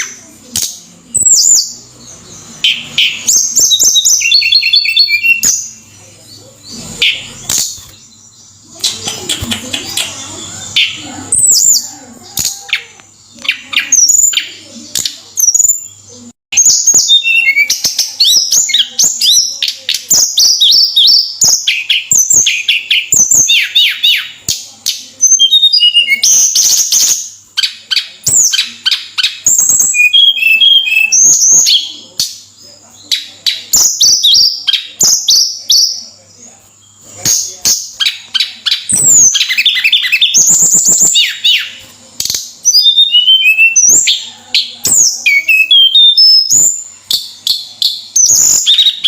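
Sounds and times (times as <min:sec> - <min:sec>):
songbird singing: 0:00.0 - 0:49.0.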